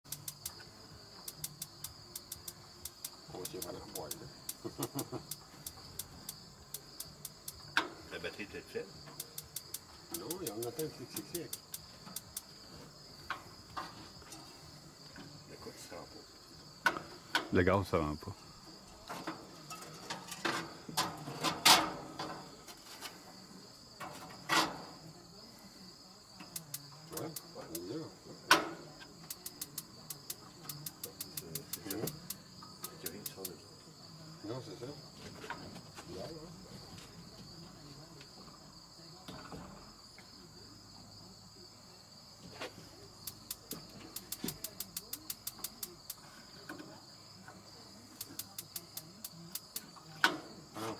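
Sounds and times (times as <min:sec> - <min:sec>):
crickets chirping: 0:00.0 - 0:50.9
barbecue igniter clicking: 0:00.1 - 0:00.6, 0:01.2 - 0:07.8, 0:09.1 - 0:12.5, 0:26.4 - 0:27.9, 0:29.3 - 0:33.6, 0:43.2 - 0:46.2, 0:48.2 - 0:49.9
person speaking: 0:10.1 - 0:11.7, 0:17.5 - 0:18.4.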